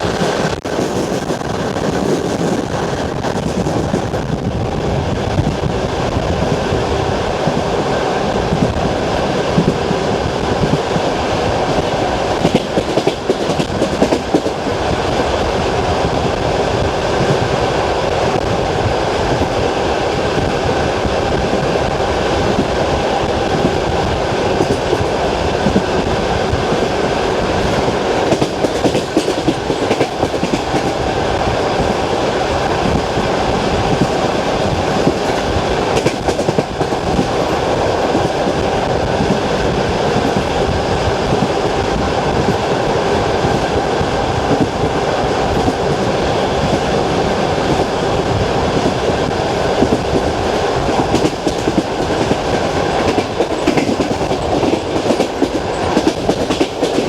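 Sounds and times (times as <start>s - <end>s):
train rolling rumble: 0.0s - 57.0s
wheels clacking over rail joints: 11.6s - 14.7s, 23.5s - 31.0s, 31.7s - 39.4s, 49.8s - 57.0s.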